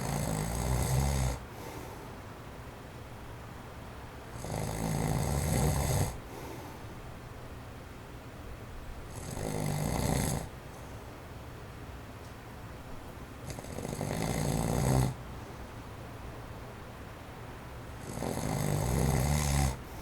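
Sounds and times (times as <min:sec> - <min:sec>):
man snoring: 0:00.0 - 0:01.4, 0:04.4 - 0:06.2, 0:09.1 - 0:10.5, 0:13.5 - 0:15.2, 0:18.0 - 0:19.9
electric fan whooshing: 0:00.0 - 0:20.0.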